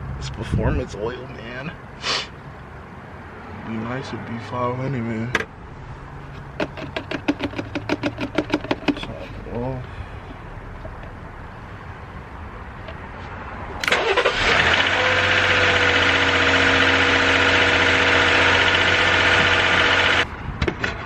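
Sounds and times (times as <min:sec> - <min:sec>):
car engine cranking and idling: 0:04.3 - 0:13.0, 0:13.7 - 0:20.3.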